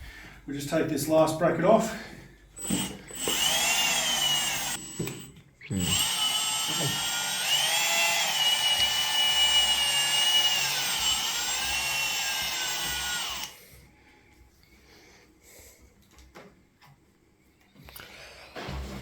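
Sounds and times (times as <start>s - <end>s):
cordless drill motor whine: 2.6s - 13.6s.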